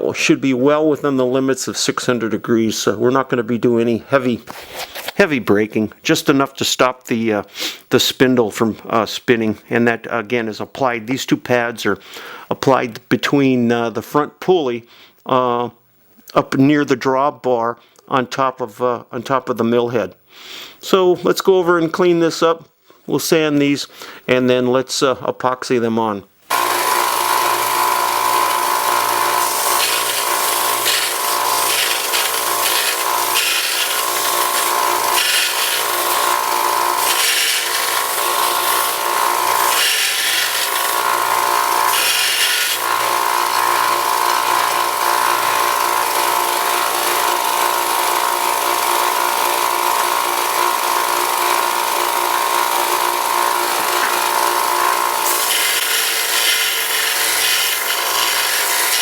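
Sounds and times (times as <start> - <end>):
belt sander sanding: 26.5 - 59.0.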